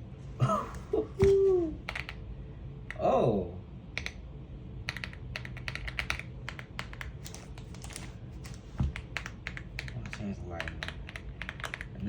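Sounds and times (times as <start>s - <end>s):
mechanical keyboard clacking: 4.9s - 12.0s.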